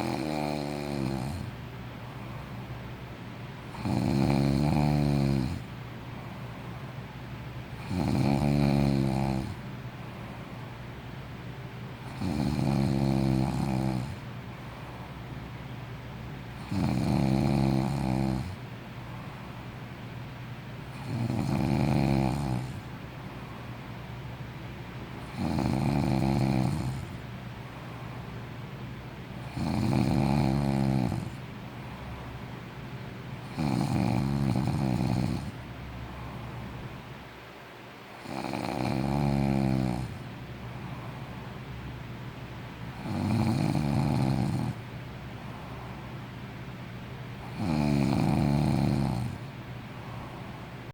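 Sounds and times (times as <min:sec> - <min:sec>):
person snoring with rattle: 0:00.0 - 0:01.5, 0:03.7 - 0:05.7, 0:07.8 - 0:09.6, 0:12.0 - 0:14.2, 0:16.6 - 0:18.6, 0:20.9 - 0:22.9, 0:25.2 - 0:27.2, 0:29.4 - 0:31.4, 0:33.4 - 0:35.6, 0:38.2 - 0:40.2, 0:43.0 - 0:44.8, 0:47.4 - 0:49.5
quiet breathing: 0:00.0 - 0:50.9.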